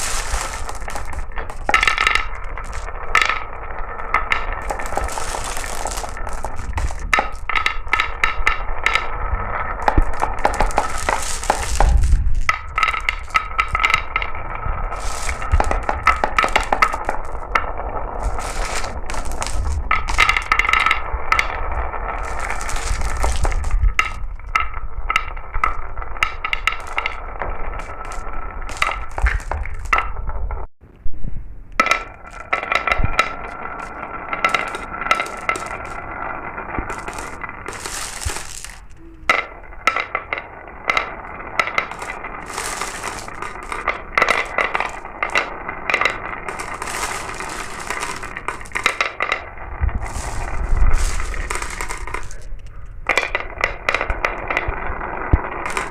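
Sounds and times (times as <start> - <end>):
marbles clicking and clinking: 0.0 - 30.6, 31.8 - 55.9
glass marbles rolling on track: 0.0 - 30.7, 31.8 - 55.9.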